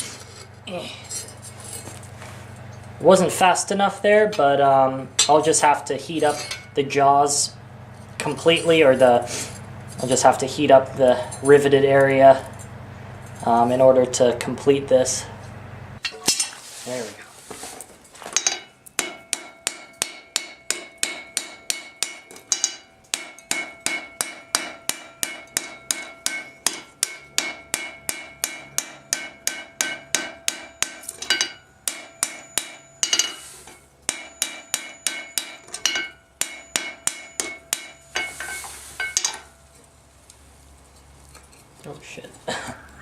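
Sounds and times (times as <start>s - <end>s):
hammer striking hot steel: 5.2s - 6.8s, 18.4s - 39.7s.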